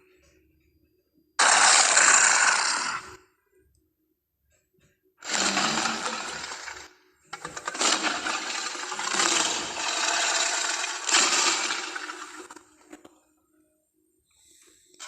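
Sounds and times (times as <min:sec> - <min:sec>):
harsh monster call: 0:01.4 - 0:03.1.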